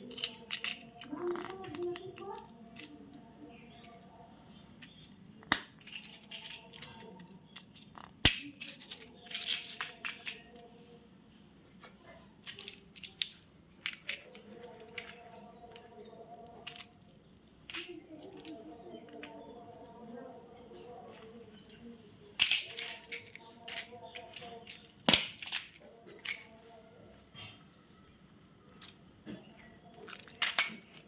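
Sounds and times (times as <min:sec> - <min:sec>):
plastic wrappers crinkling: 0:29.8 - 0:31.0.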